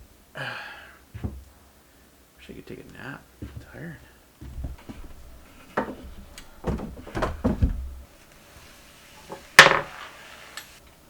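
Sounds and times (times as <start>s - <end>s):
household items knocking: 4.4s - 8.0s.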